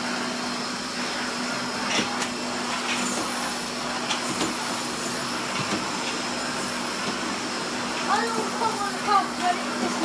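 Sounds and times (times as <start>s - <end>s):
vacuum cleaner running: 0.0s - 10.0s.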